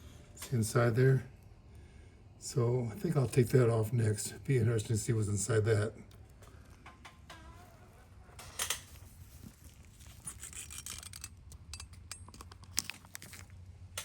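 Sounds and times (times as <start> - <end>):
handling clicks and knocks: 8.4 - 14.0.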